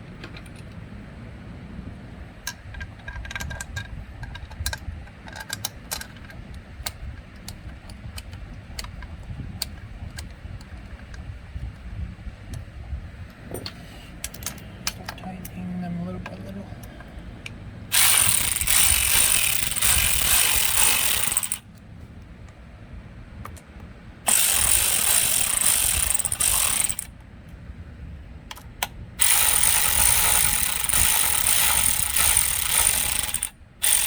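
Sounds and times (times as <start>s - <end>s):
ratchet wrench clicking: 17.9s - 21.7s, 24.3s - 27.1s, 28.5s - 34.0s.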